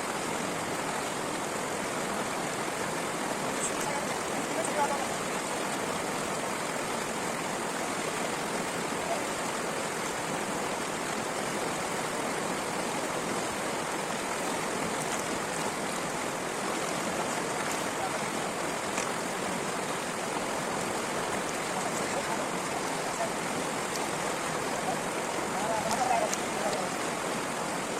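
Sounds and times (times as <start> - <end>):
stream water flowing: 0.0 - 27.9.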